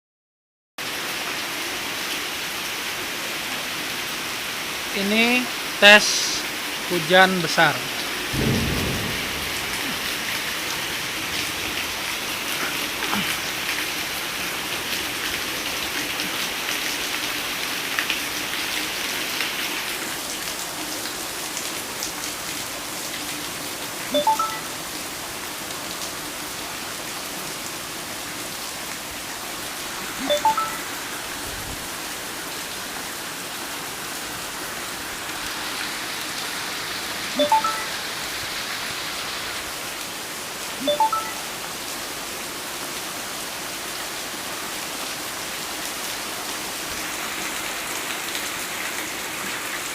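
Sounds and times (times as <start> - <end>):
heavy water falling on bags: 0.8 - 49.9
short high chirps: 37.4 - 37.9, 40.8 - 41.4.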